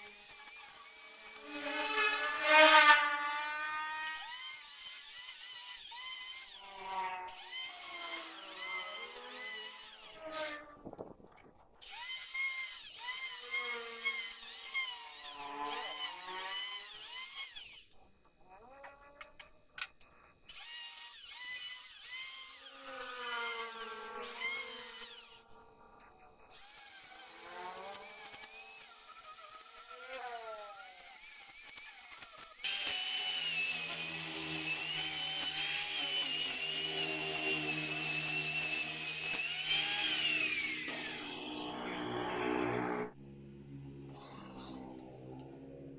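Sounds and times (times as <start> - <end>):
electric drill whining: 0.0 - 10.3, 20.5 - 25.6, 26.5 - 43.2.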